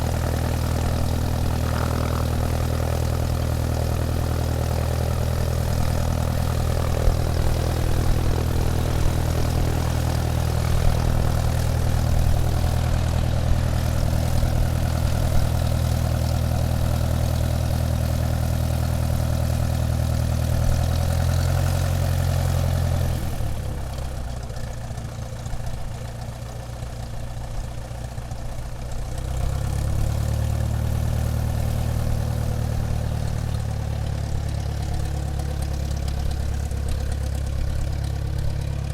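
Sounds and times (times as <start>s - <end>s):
airplane engine droning: 0.0s - 19.7s.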